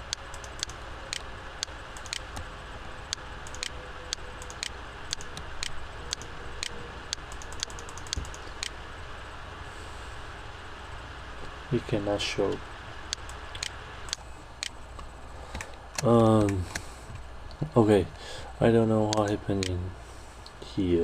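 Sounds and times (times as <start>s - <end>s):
computer keys clicking: 0.0s - 2.5s, 3.1s - 8.8s, 13.1s - 16.8s, 19.1s - 19.8s
steady background hiss: 0.0s - 21.0s.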